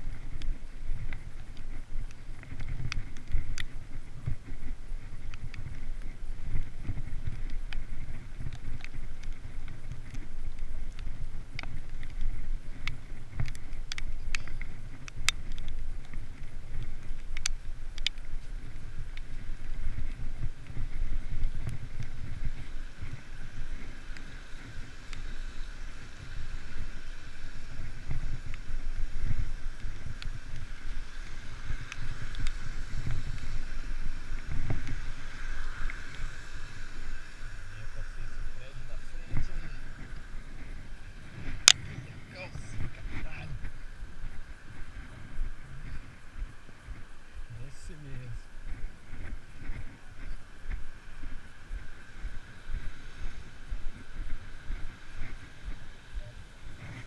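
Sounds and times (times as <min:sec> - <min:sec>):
bicycle clicks and rattles: 0:00.0 - 0:36.3
steady hiss: 0:00.0 - 0:57.0
wind buffeting microphone: 0:00.0 - 0:57.0.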